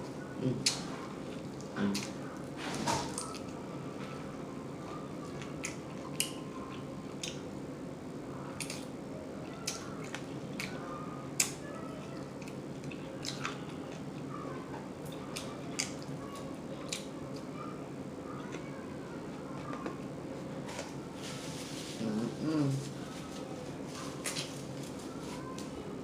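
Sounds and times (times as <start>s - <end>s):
close chewing: 9.5s - 14.3s.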